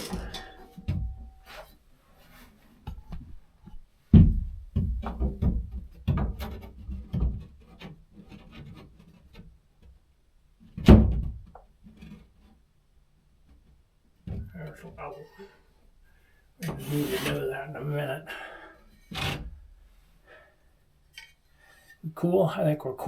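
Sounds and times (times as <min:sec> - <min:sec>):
spirit level scraping on drywall: 0:00.0 - 0:00.8, 0:16.6 - 0:17.7.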